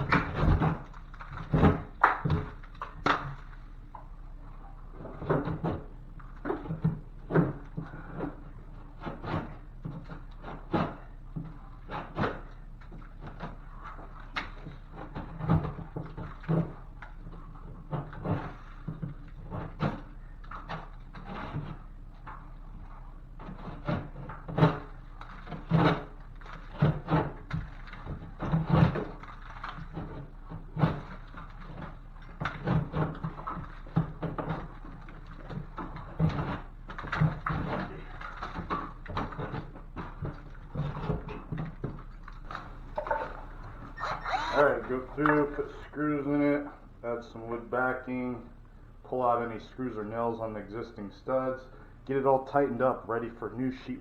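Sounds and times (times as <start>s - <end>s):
faint low hum: 0.0s - 54.0s
tool knocks and scrapes: 5.0s - 22.6s.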